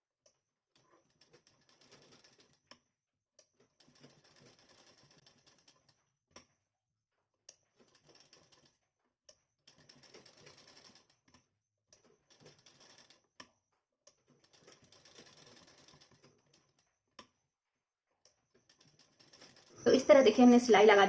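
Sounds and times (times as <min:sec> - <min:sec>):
sewing machine stitching: 0:00.7 - 0:02.8, 0:03.5 - 0:06.5, 0:07.6 - 0:13.5, 0:14.1 - 0:17.3, 0:18.2 - 0:20.6.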